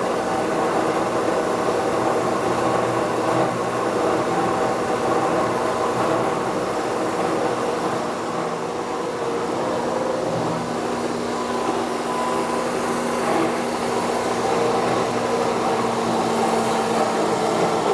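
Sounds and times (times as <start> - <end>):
planer machine humming: 0.0 - 17.9.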